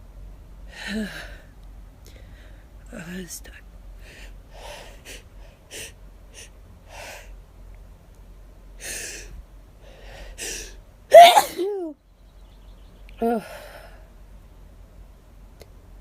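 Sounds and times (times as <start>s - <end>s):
loud sneeze: 11.1s - 11.8s.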